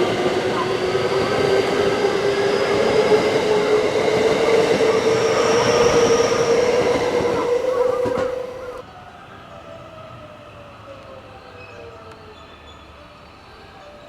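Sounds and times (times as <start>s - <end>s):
electric train motors whining: 0.0s - 8.8s
train wheels clattering on rails: 0.0s - 8.8s.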